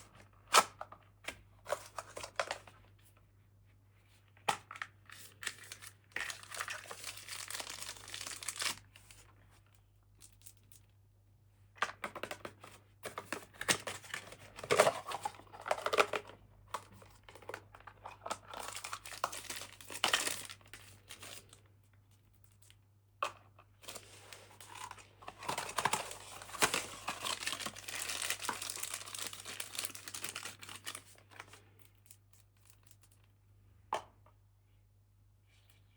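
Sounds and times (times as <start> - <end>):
packaging crinkling and tearing: 1.6 - 2.8, 4.7 - 9.2, 13.2 - 16.3, 16.9 - 21.6, 23.8 - 31.7.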